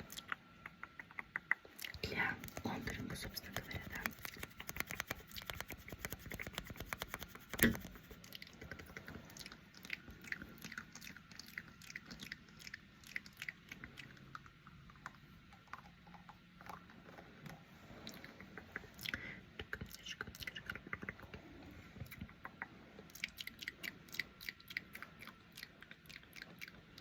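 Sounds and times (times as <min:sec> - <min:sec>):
makeup brush bristles scratching: 0:02.2 - 0:08.2.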